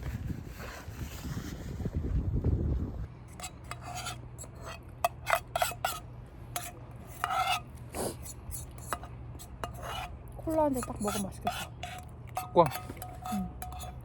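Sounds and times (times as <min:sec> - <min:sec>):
steady low hum: 0:02.1 - 0:14.0
dishes and utensils clinking: 0:08.2 - 0:14.0.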